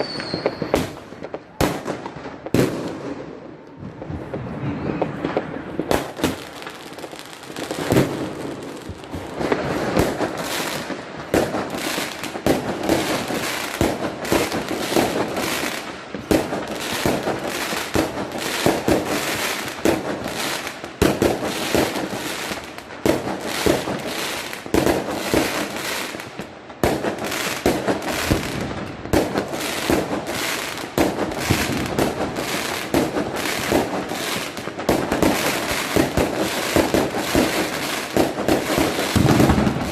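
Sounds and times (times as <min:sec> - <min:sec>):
fireworks crackling: 0:00.0 - 0:39.9
firecracker bangs: 0:34.8 - 0:39.9.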